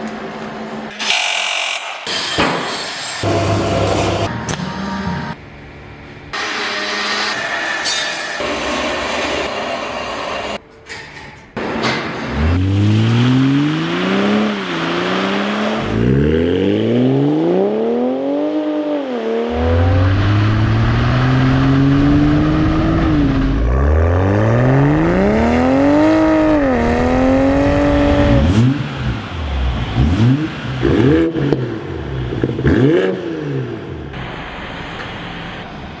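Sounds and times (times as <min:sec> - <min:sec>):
car engine revving: 0:12.2 - 0:35.7.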